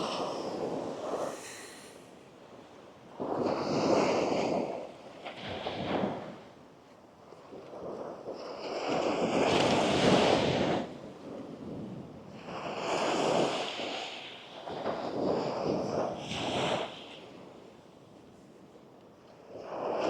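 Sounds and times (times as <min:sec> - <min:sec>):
small waves breaking on beach: 0:00.0 - 0:06.6.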